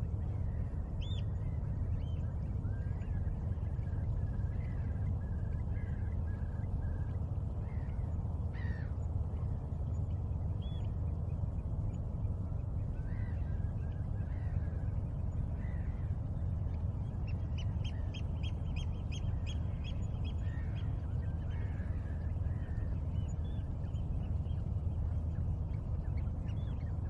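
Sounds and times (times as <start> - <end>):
steady low rumble: 0.0 - 27.0
wild birds chirping: 0.1 - 27.0.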